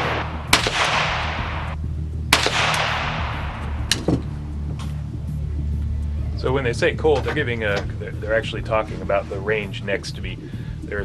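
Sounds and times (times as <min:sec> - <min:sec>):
echoing gunshots: 0:00.0 - 0:04.5
steady low hum: 0:00.0 - 0:11.0.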